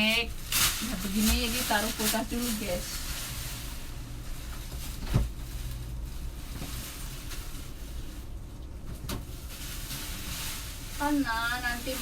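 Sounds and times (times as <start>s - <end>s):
low steady rumble: 0.0s - 12.0s.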